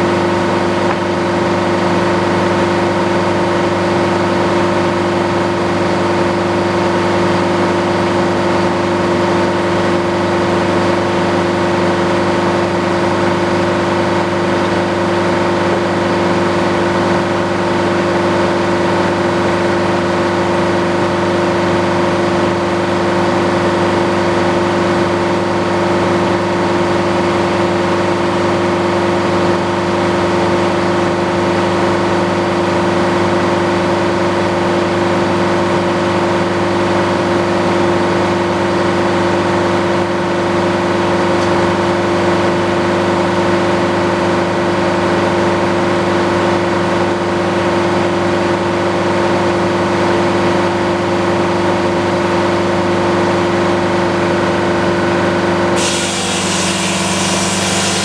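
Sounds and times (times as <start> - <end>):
circular saw running: 55.7 - 58.0.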